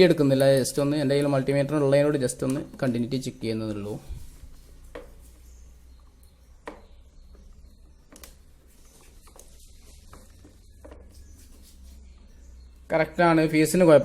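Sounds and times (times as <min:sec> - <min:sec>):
faint probe clicks and taps: 0:04.9 - 0:11.2.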